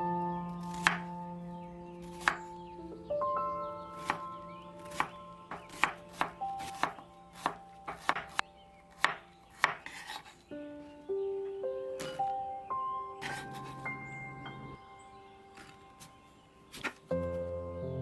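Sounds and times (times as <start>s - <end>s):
soft background music: 0.0s - 18.0s
knife chopping on cutting board: 4.0s - 4.2s, 4.9s - 8.4s, 9.0s - 10.2s.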